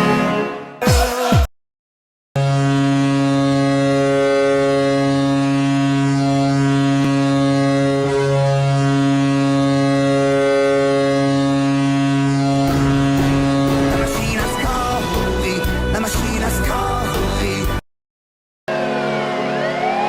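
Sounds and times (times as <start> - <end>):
goal horn blast: 0.0 - 1.5, 2.4 - 15.3, 18.7 - 20.0.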